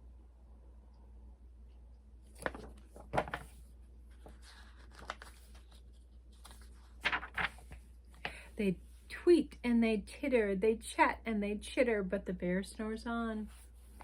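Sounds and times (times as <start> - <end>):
paper pages rustling: 2.2 - 8.4.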